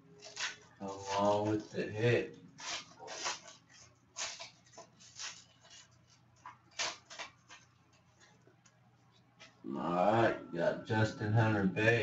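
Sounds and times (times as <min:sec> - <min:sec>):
wrapper and card rustling: 0:00.0 - 0:09.6.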